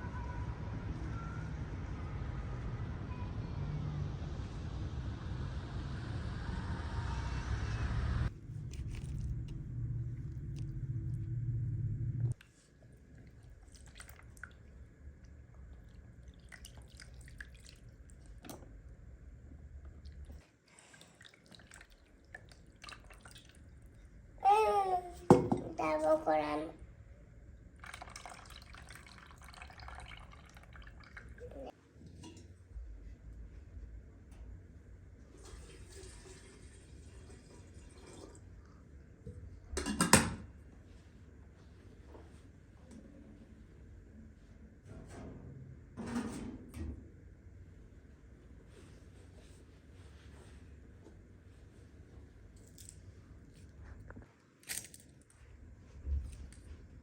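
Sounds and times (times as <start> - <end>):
loud low rumble: 0.0 - 12.4
low steady hum: 0.0 - 57.0
water pouring: 8.3 - 11.3, 13.0 - 14.8, 15.6 - 18.6, 20.0 - 23.9, 27.8 - 31.7, 35.3 - 38.5
kitchenware clattering: 25.3 - 25.8.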